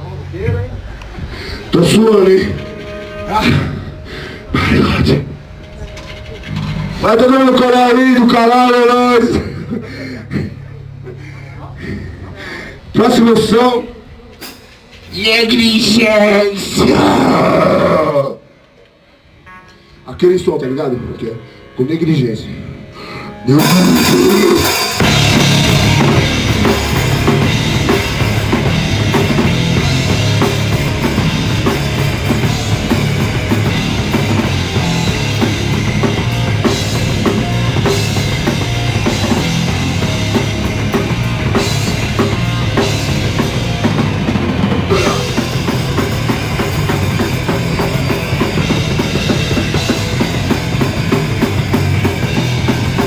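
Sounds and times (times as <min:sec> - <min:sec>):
busy drum kit: 0:00.0 - 0:09.5, 0:13.0 - 0:16.9, 0:23.5 - 0:53.0
live rock band playing: 0:00.0 - 0:09.5, 0:23.3 - 0:53.0.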